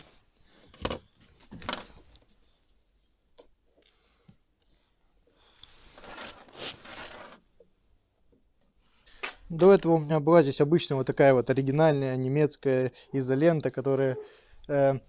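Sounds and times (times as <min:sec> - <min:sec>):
tape tearing: 0:06.0 - 0:07.4.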